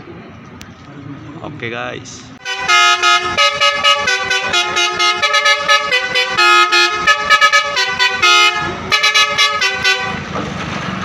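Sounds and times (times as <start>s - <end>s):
bus musical horn playing tune: 2.4s - 10.3s.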